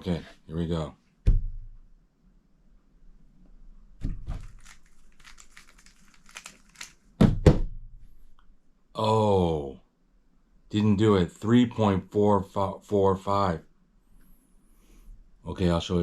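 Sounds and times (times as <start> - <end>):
hard knocks: 1.2 - 1.8
puzzle cube plastic clicks: 4.4 - 7.1.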